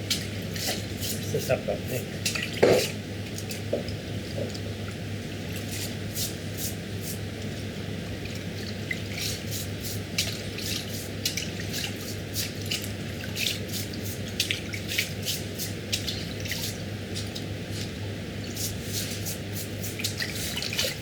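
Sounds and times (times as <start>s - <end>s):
water dripping and splashing: 2.2s - 5.7s, 10.1s - 17.9s, 19.9s - 21.0s.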